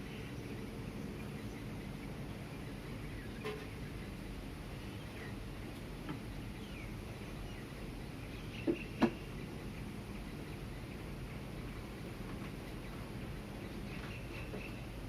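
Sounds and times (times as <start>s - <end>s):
low traffic rumble: 0.0s - 15.0s
faint bird chirps: 6.3s - 12.1s, 12.7s - 15.0s.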